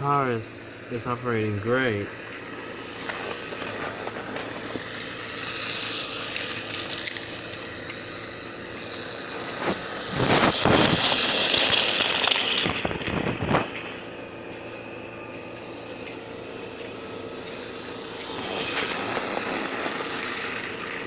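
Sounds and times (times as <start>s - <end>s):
toy train motor whirring: 0.0s - 21.0s
toy train wheel rattle: 2.2s - 9.8s, 10.6s - 13.9s, 16.7s - 21.0s.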